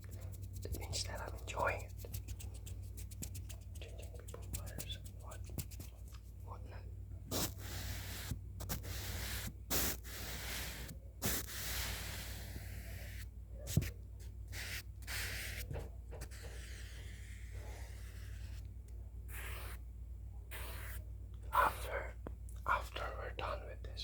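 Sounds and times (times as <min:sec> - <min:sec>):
brush swishing across microphone: 0:00.0 - 0:06.3, 0:20.5 - 0:21.0.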